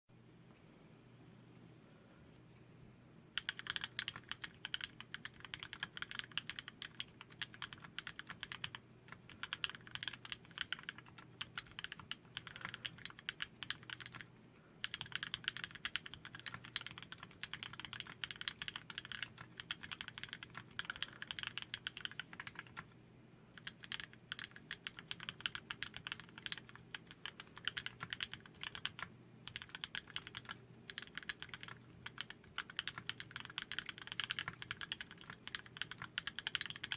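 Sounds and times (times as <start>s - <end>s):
mechanical keyboard typing: 3.4s - 22.9s, 23.5s - 36.9s.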